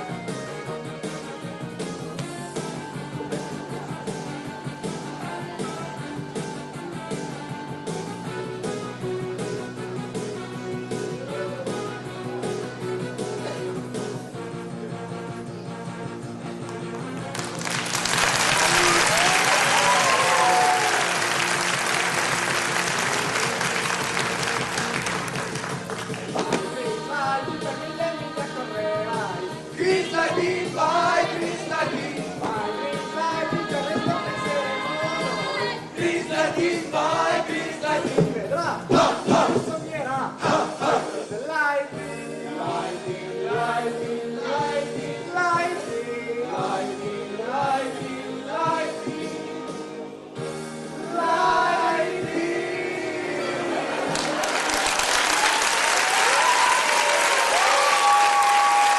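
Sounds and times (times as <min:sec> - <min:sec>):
backing track: 0:00.0 - 0:41.3
audience applauding: 0:17.2 - 0:26.4, 0:53.9 - 0:58.9
group of voices singing: 0:26.3 - 0:39.8, 0:40.4 - 0:54.6.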